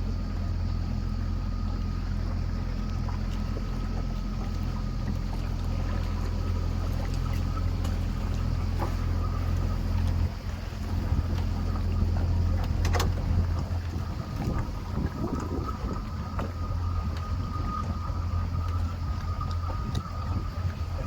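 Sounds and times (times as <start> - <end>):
boat engine humming: 0.0 - 21.0
water noise: 0.0 - 21.0
wind noise: 7.6 - 21.0.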